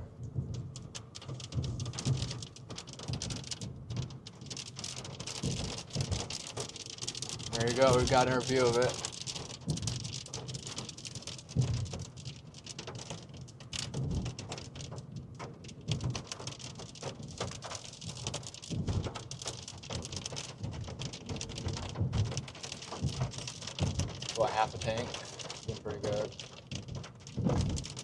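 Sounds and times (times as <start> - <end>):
rain on car roof: 0.0 - 28.0.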